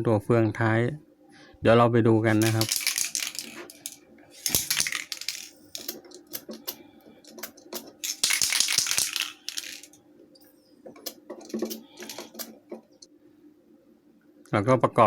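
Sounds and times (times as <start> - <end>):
small plastic parts clattering: 2.3 - 10.0, 11.0 - 12.6.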